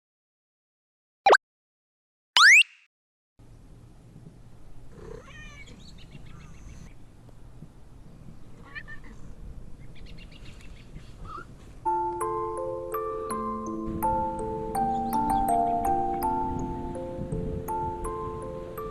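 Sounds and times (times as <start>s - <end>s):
cat meowing: 5.0s - 6.9s, 8.6s - 9.3s
mallet percussion music: 11.9s - 18.9s.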